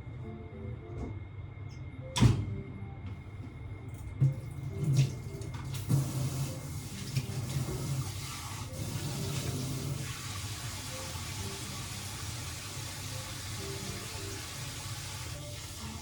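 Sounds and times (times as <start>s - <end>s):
water running from a tap: 4.2s - 16.0s.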